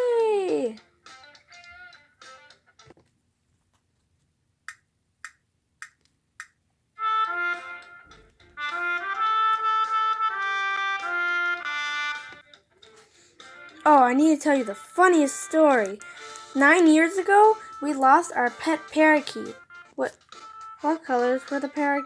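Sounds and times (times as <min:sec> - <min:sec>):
brass melody: 0:07.0 - 0:12.4.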